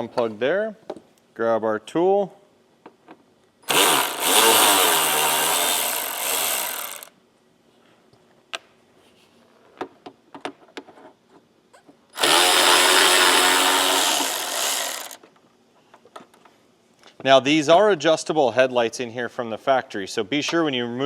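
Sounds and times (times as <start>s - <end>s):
power drill driving out screws: 3.7s - 7.1s, 12.2s - 15.2s
tool and screw clicks: 12.2s - 15.3s.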